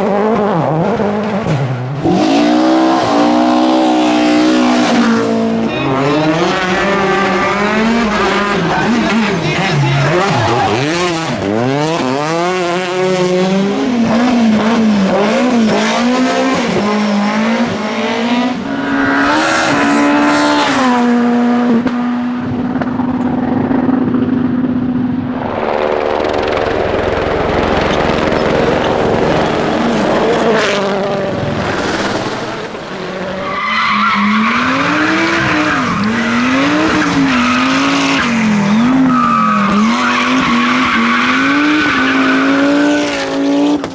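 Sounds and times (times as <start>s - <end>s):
rally car engines revving: 0.0s - 43.9s
rushing noise: 25.2s - 35.1s.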